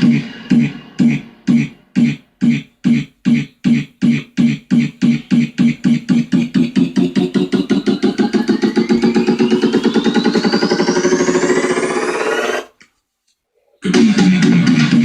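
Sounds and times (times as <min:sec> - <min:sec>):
electronic dance music build-up: 0:00.0 - 0:12.7.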